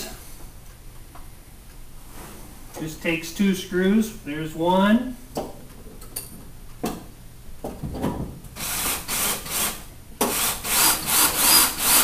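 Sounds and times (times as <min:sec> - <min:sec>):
drill driver motor whine: 0:10.3 - 0:12.0.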